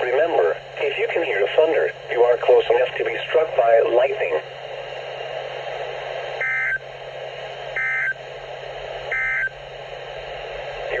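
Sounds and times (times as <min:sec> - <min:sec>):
radio hiss: 0:00.0 - 0:11.0
digital data tone bursts: 0:09.1 - 0:09.5.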